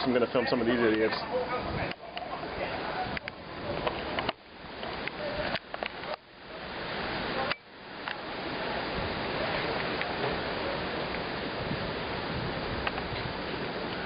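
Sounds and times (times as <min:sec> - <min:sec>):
gusty wind buffeting microphone: 0:00.0 - 0:14.0.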